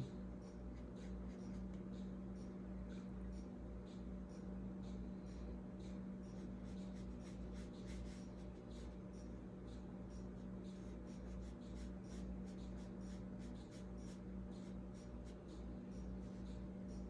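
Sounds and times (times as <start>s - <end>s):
steady low hum: 0.0s - 17.0s
brush strokes on paper: 6.4s - 9.0s.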